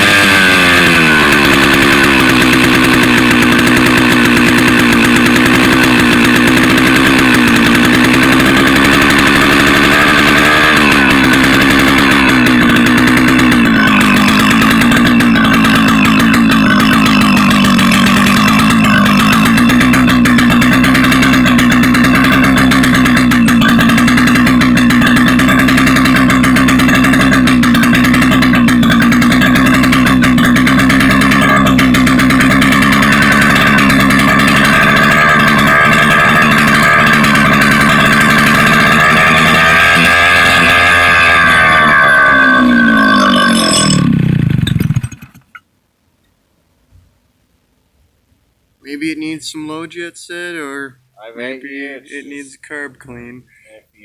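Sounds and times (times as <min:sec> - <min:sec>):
chainsaw engine running: 0:00.0 - 0:45.6, 0:51.2 - 0:53.7.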